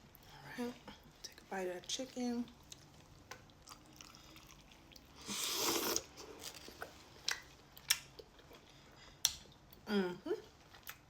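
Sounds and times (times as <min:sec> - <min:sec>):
person chewing food: 0:02.6 - 0:09.8.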